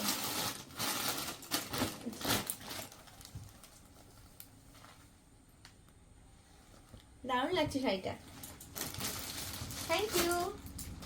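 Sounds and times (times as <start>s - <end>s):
fabric and wrapping rustling: 0.0s - 5.3s, 6.4s - 11.0s.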